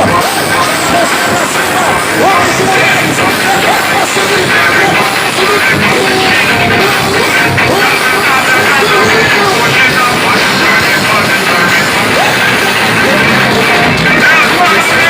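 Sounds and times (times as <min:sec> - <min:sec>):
loud music through car speakers: 0:00.0 - 0:15.0.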